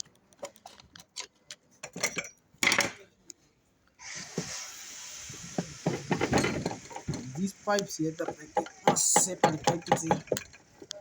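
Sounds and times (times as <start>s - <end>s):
steady hiss: 4.1s - 10.2s.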